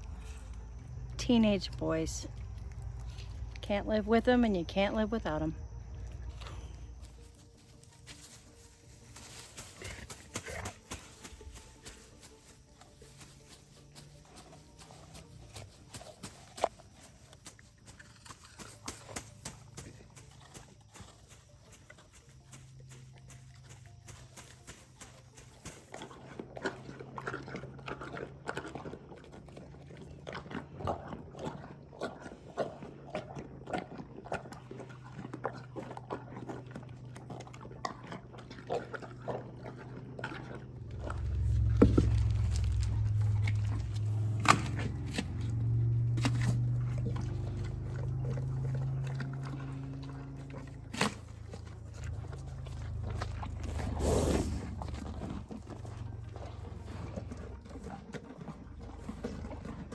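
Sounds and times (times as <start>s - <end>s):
animal crunching and chewing: 0.0s - 3.7s, 5.6s - 59.9s
steady low rumble: 0.0s - 7.5s, 40.4s - 59.9s.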